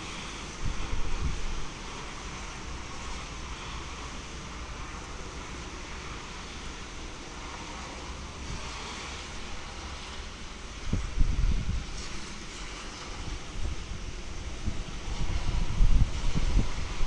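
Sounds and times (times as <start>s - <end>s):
wind buffeting microphone: 0.0s - 4.1s, 9.4s - 17.0s
strong wind blowing: 0.0s - 6.1s, 10.5s - 12.3s, 13.0s - 17.0s.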